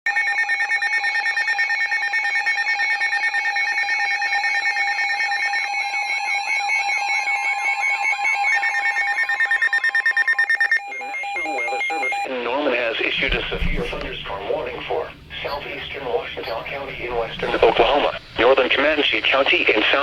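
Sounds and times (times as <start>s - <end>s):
electronic alarm tones beeping: 0.1s - 12.3s, 13.1s - 19.5s
steady alarm tone: 0.1s - 12.3s, 13.1s - 20.0s
warbling alarm tone: 6.2s - 12.3s, 13.1s - 20.0s.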